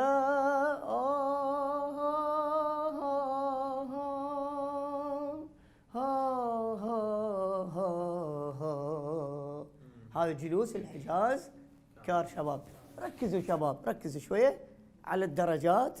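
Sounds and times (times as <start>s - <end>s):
man singing unaccompanied: 0.0s - 10.4s
singer breath: 5.5s - 5.9s, 9.8s - 10.2s.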